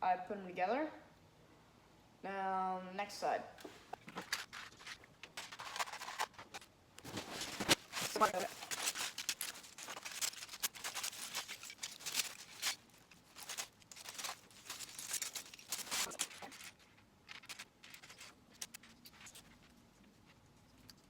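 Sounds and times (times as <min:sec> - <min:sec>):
plastic bricks clicking and rattling: 0:04.2 - 0:12.6.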